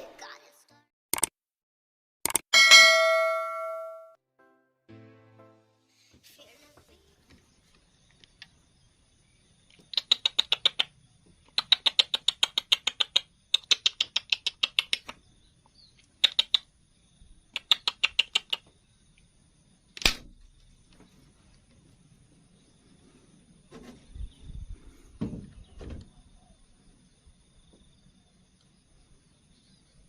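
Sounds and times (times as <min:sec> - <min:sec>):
insect chirping: 0:07.0 - 0:30.0
sharp crack: 0:20.0 - 0:20.4.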